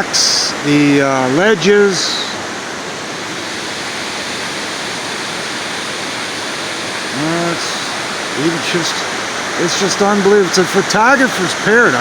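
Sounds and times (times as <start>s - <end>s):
water pouring over waterfall: 3.8s - 12.0s.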